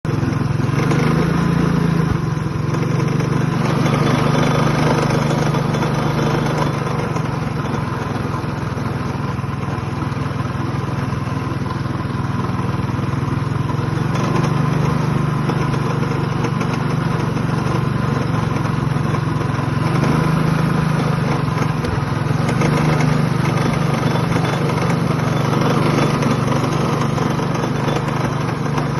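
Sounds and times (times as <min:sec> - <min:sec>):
small engine running: 0:00.1 - 0:28.9
rattling noise: 0:20.9 - 0:28.9.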